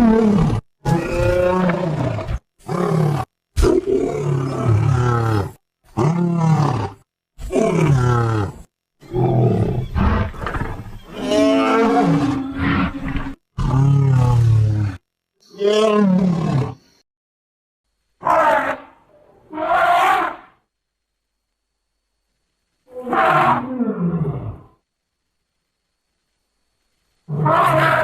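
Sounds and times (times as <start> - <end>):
creature growling roars: 0.0 - 15.0.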